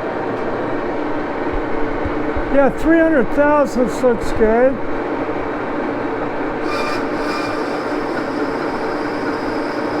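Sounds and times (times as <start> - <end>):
high-pitched squeal: 6.6 - 10.0
metal lathe droning: 6.6 - 10.0.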